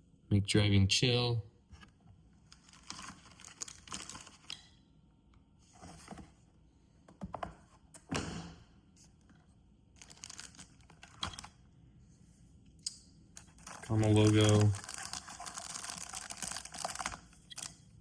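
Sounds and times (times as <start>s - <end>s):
cardboard and paper rustling: 2.5s - 4.5s, 5.7s - 6.4s, 10.0s - 11.5s, 13.4s - 17.7s.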